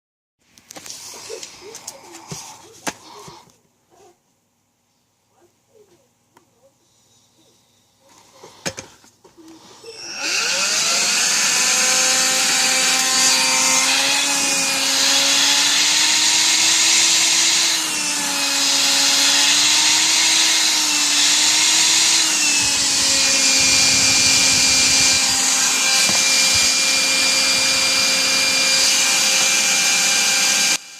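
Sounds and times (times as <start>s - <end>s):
vacuum cleaner motor whine: 9.4s - 30.9s.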